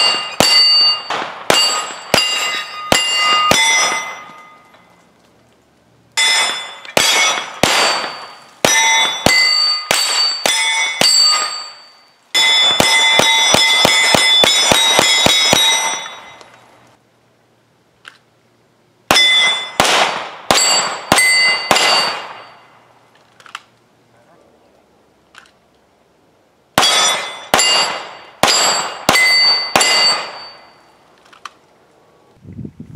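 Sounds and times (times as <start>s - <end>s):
pistol shots: 0.0s - 4.4s, 6.2s - 11.8s, 12.4s - 16.4s, 19.1s - 22.7s, 26.8s - 30.7s
steel plate ringing: 0.0s - 5.1s, 6.2s - 16.7s, 19.1s - 19.8s, 20.5s - 22.9s, 26.8s - 31.0s.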